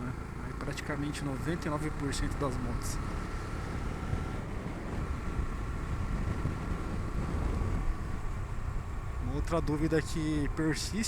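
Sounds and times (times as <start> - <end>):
motorcycle engine cruising: 0.0 - 11.0
wind rushing over microphone: 3.6 - 11.0.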